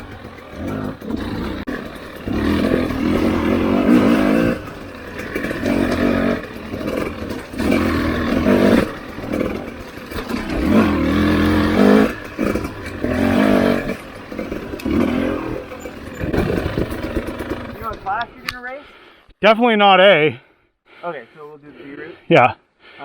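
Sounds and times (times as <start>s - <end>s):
dirt bike engine revving: 0.0s - 18.2s.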